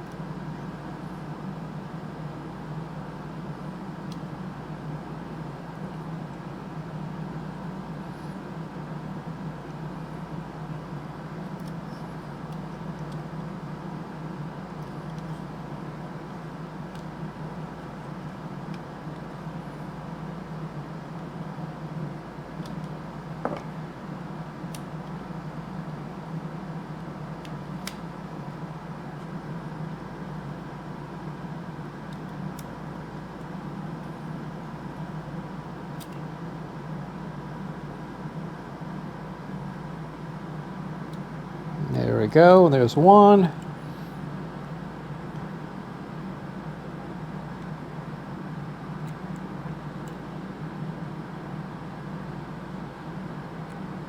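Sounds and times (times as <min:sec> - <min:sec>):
low background hum: 0:00.0 - 0:54.0
small plastic and metal clicks: 0:36.0 - 0:36.2.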